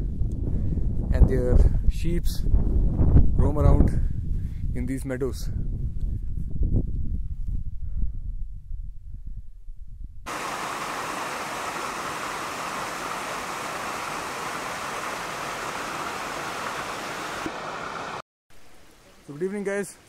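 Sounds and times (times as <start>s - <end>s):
wind on microphone: 0.0s - 17.5s
fast-flowing mountain stream: 10.3s - 18.2s.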